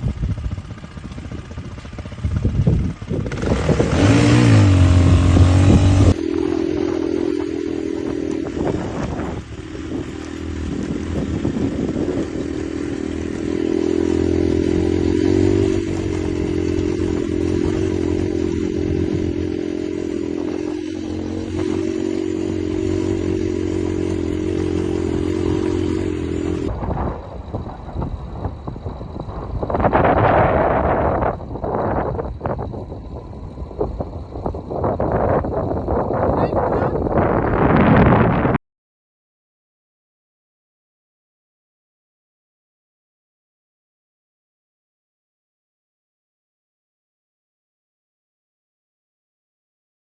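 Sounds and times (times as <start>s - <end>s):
motorcycle engine running: 0.0s - 38.6s
rush of wind noise: 0.0s - 38.6s.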